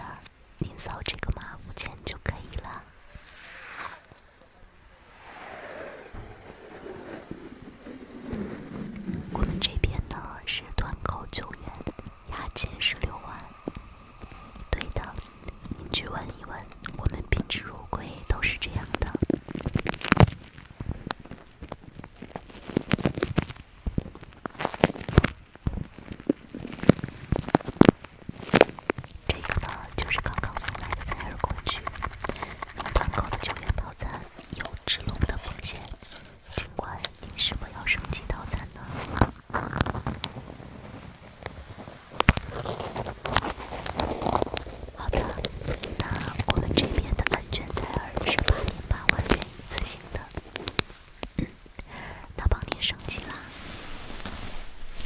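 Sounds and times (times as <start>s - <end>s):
ear cleaning crackling and scratching: 5.2s - 55.0s
sea waves washing in: 53.4s - 55.0s.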